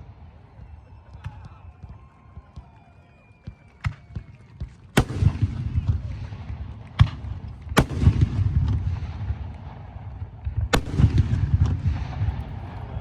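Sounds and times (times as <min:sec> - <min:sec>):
fireworks bangs with echo: 0:03.8 - 0:13.0.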